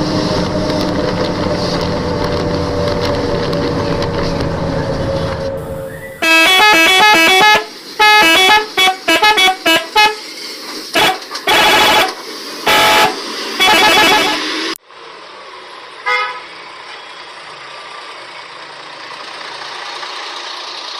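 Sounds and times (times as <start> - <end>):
engine-like hum: 0.0 - 20.9
multi-tone musical bus horn: 5.2 - 10.3, 10.9 - 14.8, 16.0 - 16.5.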